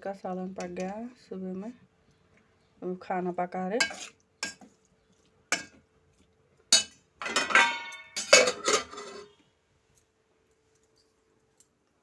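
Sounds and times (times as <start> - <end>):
dishes and utensils clattering: 3.8 - 4.7, 5.5 - 5.8, 6.7 - 9.4.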